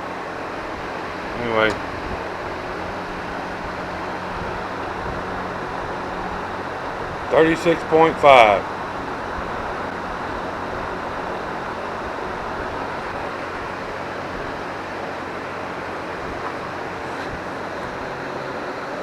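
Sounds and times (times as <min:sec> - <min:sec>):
steady rushing noise: 0:00.0 - 0:19.0.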